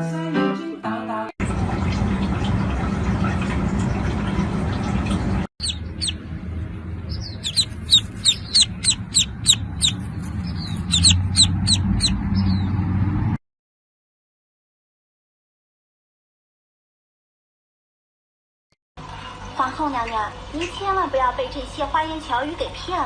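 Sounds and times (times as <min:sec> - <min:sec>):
bird chirping: 0:05.6 - 0:06.3, 0:07.0 - 0:12.8.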